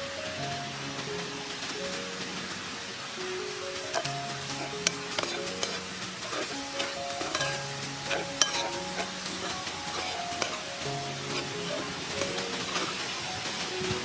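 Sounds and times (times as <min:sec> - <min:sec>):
hot oil sizzling: 0:00.0 - 0:14.0
utensil clicking and scraping: 0:03.9 - 0:13.2.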